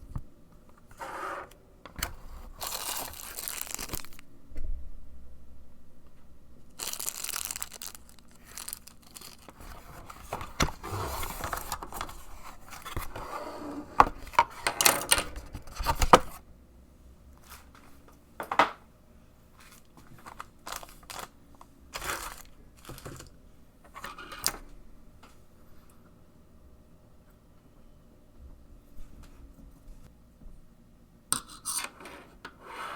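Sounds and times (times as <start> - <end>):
packaging crinkling and tearing: 2.0 - 4.2, 6.8 - 13.2, 19.6 - 21.4, 22.0 - 23.3.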